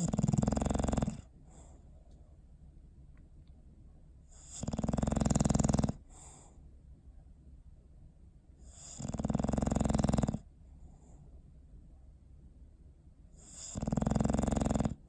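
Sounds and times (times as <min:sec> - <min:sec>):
dog snoring: 0:00.0 - 0:01.7, 0:04.3 - 0:06.6, 0:08.6 - 0:10.5, 0:13.3 - 0:15.0
dog breathing softly: 0:00.0 - 0:02.3, 0:04.2 - 0:06.8, 0:10.0 - 0:11.5.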